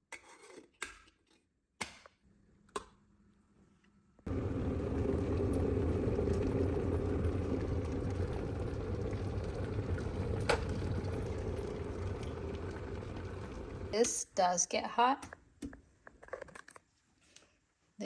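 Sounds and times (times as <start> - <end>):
kettle heating water: 4.3 - 14.9.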